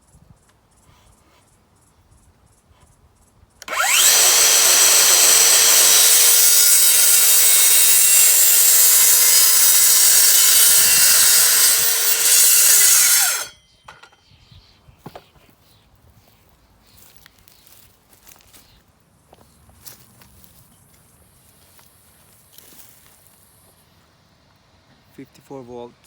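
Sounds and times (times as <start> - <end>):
circular saw cutting: 3.6 - 13.6
saw winding down whine: 3.6 - 13.6.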